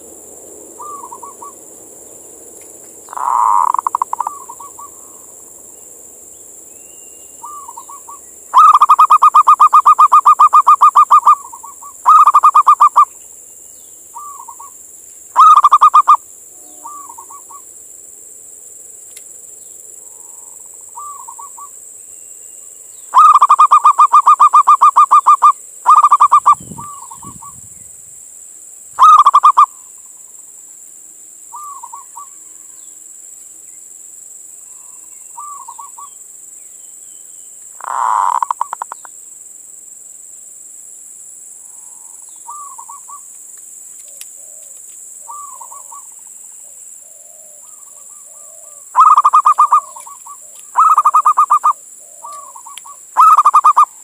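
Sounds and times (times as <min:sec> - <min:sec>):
dove stuttering coos: 0:03.1 - 0:05.1, 0:08.6 - 0:13.1, 0:15.4 - 0:16.2, 0:23.2 - 0:27.2, 0:29.0 - 0:29.7, 0:37.8 - 0:39.0, 0:48.3 - 0:53.9.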